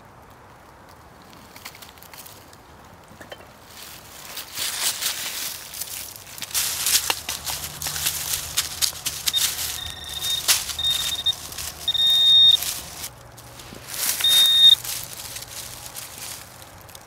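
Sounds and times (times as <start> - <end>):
digging scrapes and clicks in soil: 3.7 - 17.0
metal detector beeping: 6.6 - 15.8.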